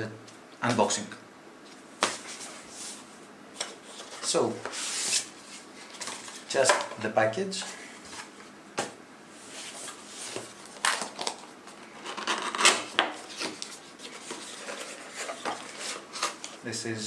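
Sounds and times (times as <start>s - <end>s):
cardboard and paper rustling: 1.7s - 6.9s, 9.5s - 16.6s.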